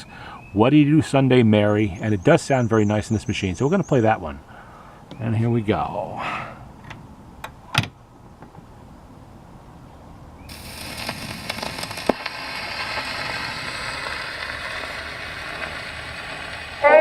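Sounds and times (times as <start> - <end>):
gramophone surface hiss and crackle: 10.5 - 17.0.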